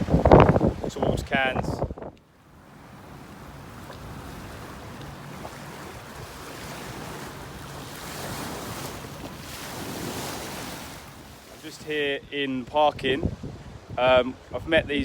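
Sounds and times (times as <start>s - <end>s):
sea waves washing in: 0.0s - 1.6s, 2.3s - 12.1s
wind buffeting microphone: 0.0s - 15.0s.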